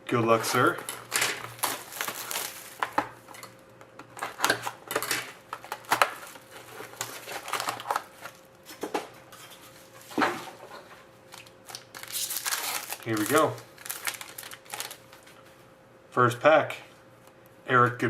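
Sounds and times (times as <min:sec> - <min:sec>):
plastic wrapping crinkling: 0:00.3 - 0:03.5, 0:04.2 - 0:08.6, 0:11.3 - 0:15.4.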